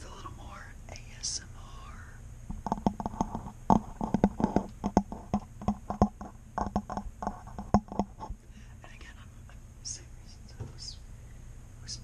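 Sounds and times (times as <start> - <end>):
sharp clicks and knocks: 2.5 - 8.3.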